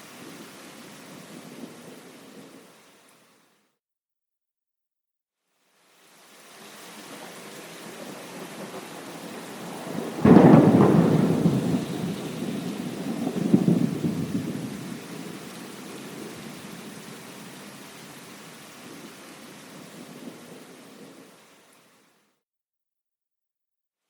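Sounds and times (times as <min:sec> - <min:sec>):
steady rain: 0:00.0 - 0:03.7, 0:05.5 - 0:22.4
thunder crack and rumble: 0:08.0 - 0:16.9.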